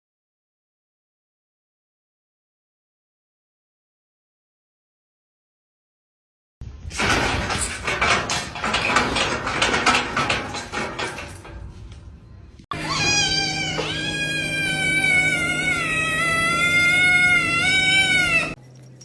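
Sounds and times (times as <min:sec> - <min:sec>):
cat yowling: 0:12.7 - 0:18.6.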